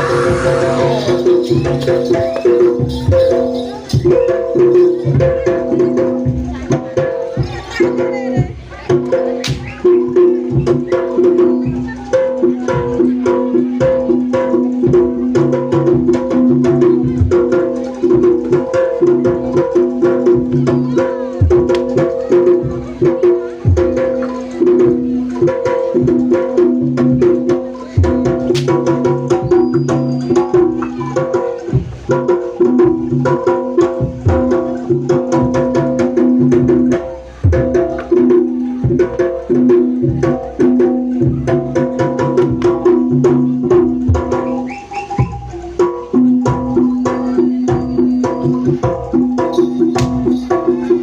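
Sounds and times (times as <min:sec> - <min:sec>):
ringing pitched percussion notes: 0:00.0 - 0:07.7, 0:27.5 - 0:35.5, 0:43.3 - 0:51.0
quick drum strokes: 0:00.0 - 0:51.0.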